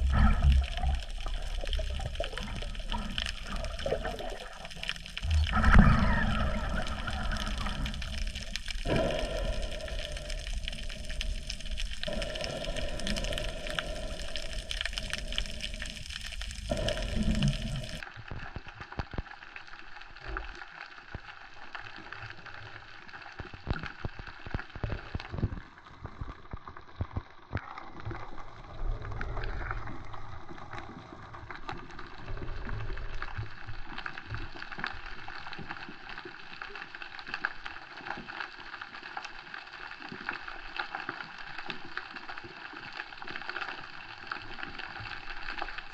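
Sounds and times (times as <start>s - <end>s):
water washing and bubbling: 0.0s - 18.1s
small underwater clicks: 0.0s - 45.9s.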